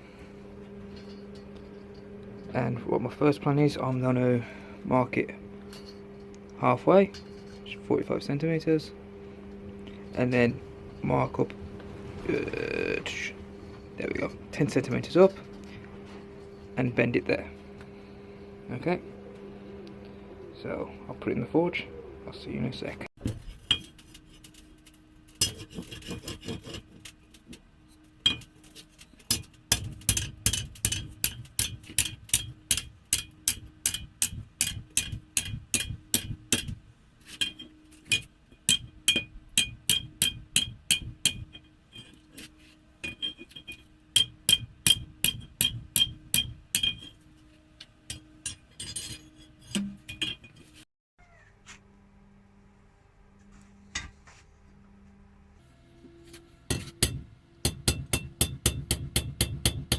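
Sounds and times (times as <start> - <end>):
hammer blows on an anvil: 43.1 - 47.2.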